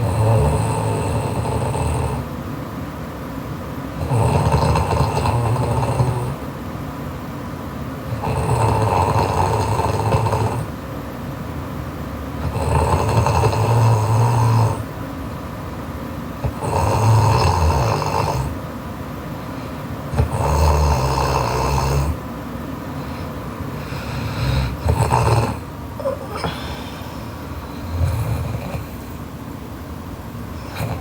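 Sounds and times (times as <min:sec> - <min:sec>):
woman snoring loudly: 0:00.0 - 0:02.3, 0:04.0 - 0:06.4, 0:08.1 - 0:10.7, 0:12.4 - 0:14.9, 0:16.4 - 0:18.6, 0:20.1 - 0:22.2, 0:23.7 - 0:29.2, 0:30.6 - 0:31.0.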